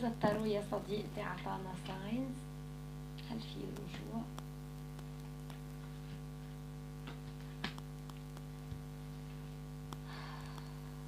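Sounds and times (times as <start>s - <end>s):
steady electrical hum: 0.0s - 11.0s
cards clicking and tapping: 7.0s - 8.5s.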